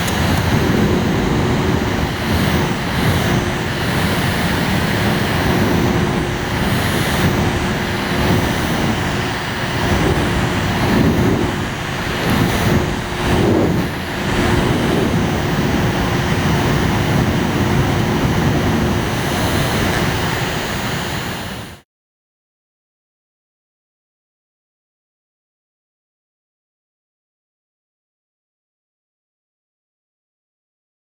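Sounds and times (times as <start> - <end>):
air conditioner fan running: 0.0 - 21.8.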